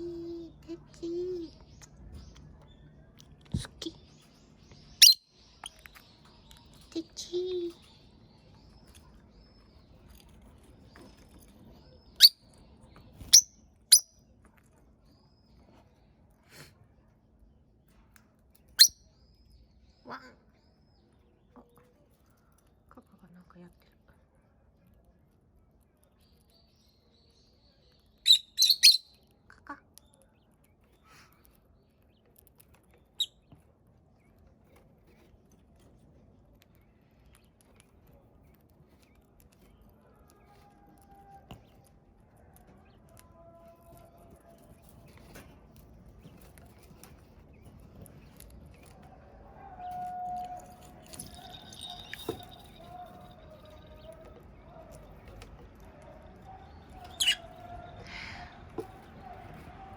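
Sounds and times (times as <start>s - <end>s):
lovebirds peeping and shrieking: 0.0s - 14.1s, 18.6s - 21.2s, 27.4s - 29.3s, 37.1s - 59.9s.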